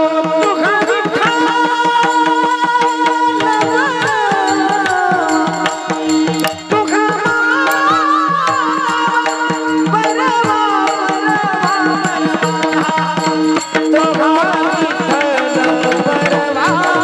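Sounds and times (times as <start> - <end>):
devotional melody: 0.0 - 17.0
drum and percussion strokes: 3.2 - 8.7.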